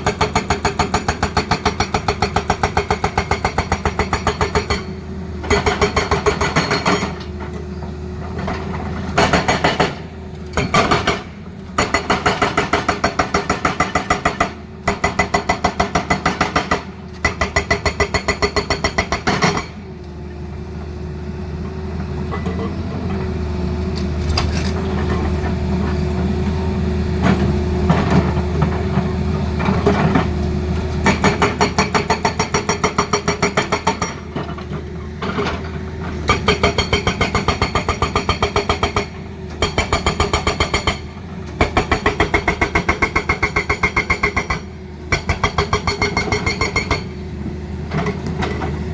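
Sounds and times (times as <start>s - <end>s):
excavator engine drone: 16.8s - 48.9s
hydraulic breaker hammering: 36.3s - 47.1s.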